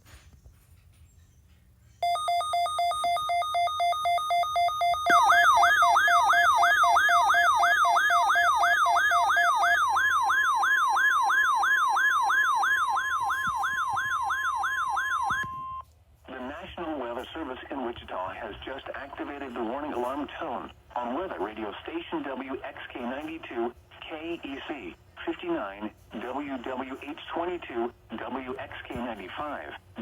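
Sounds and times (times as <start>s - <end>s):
pulsing electronic beep: 2.0s - 9.9s
steady warning alarm tone: 2.0s - 15.8s, 16.4s - 30.0s
upward sweeping alarm tone: 2.0s - 15.8s.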